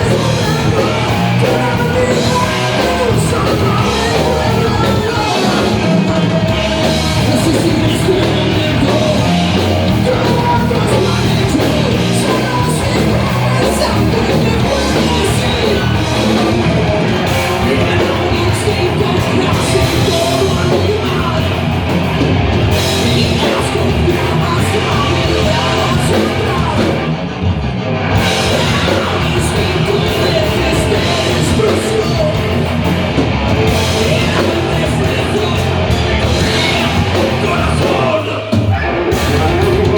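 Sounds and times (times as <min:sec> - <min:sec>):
live heavy rock band with singing: 0:00.0 - 0:39.9.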